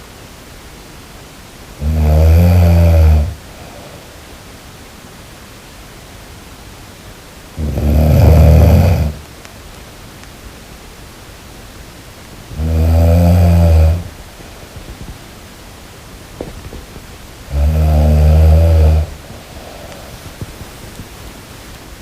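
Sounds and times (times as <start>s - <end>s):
steady hiss: 0.0s - 22.0s
low-pitched snoring: 1.8s - 4.1s, 7.6s - 9.2s, 12.5s - 14.2s, 17.5s - 20.4s.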